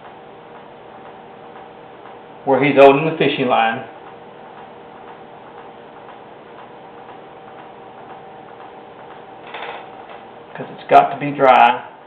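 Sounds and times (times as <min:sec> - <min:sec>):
steady hum: 0:00.0 - 0:12.0
clock ticking: 0:04.0 - 0:09.3.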